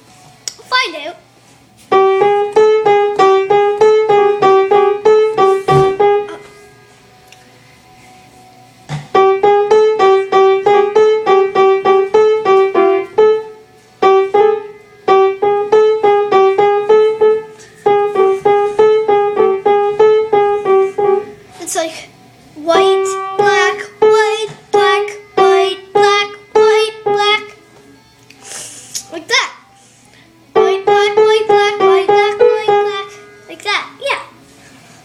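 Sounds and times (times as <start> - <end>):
piano ringtone figure: 9.2 - 21.6, 22.6 - 28.2, 30.5 - 33.6.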